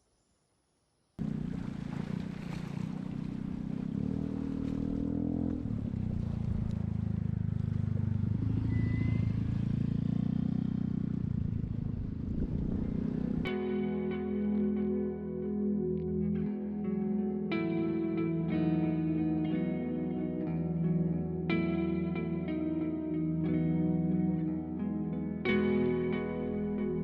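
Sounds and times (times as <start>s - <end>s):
vehicle engine revving: 1.2s - 13.6s.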